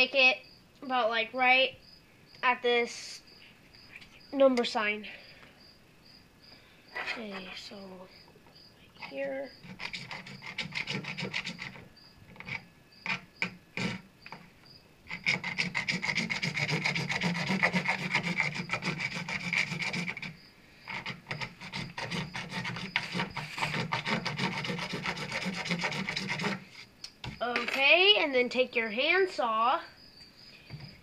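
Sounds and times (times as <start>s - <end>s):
saw rasping on plastic pipe: 9.0s - 14.4s, 15.1s - 26.9s.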